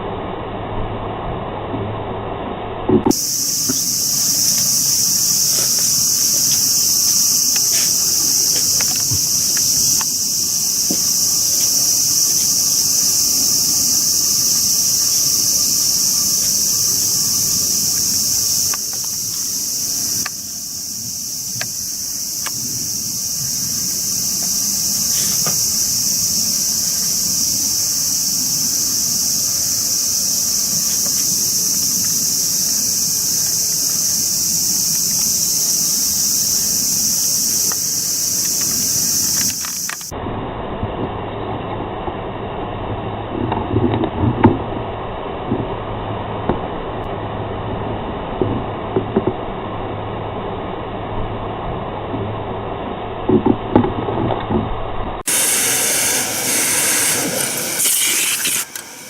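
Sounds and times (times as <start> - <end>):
insect chorus shrilling: 3.1 - 40.1, 55.3 - 59.0.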